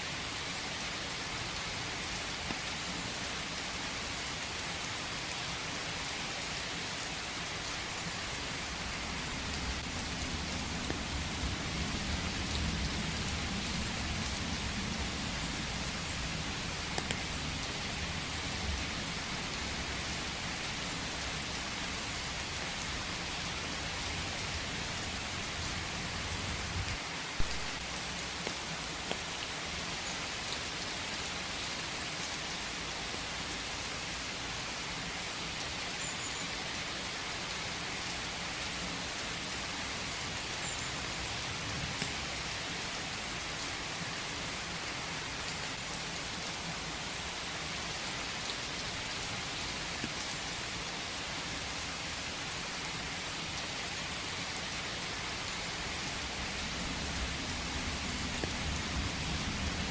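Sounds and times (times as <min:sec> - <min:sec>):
steady rain in forest: 0:00.0 - 0:59.9
raindrops ticking: 0:08.8 - 0:23.5, 0:27.4 - 0:29.8, 0:55.9 - 0:59.8.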